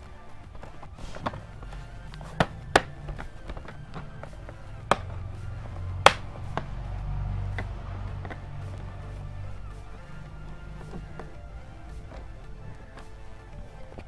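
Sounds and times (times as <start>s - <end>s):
plastic clicks and taps: 0.0s - 6.8s.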